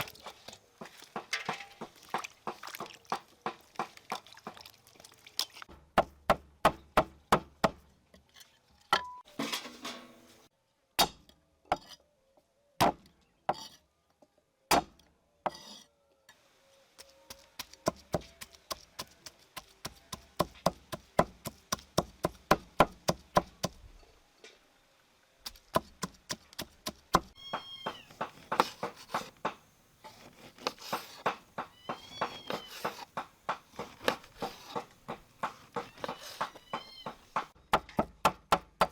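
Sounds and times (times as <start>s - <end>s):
knife chopping on cutting board: 25.7s - 38.9s
cat meowing: 27.4s - 28.2s, 31.7s - 32.9s, 35.8s - 37.2s.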